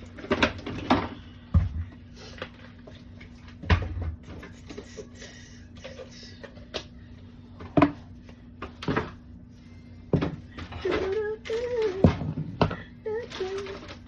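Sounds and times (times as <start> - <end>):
items and shelves clattering: 0.0 - 5.2, 7.5 - 9.3, 10.1 - 14.0
steady low hum: 0.0 - 14.0.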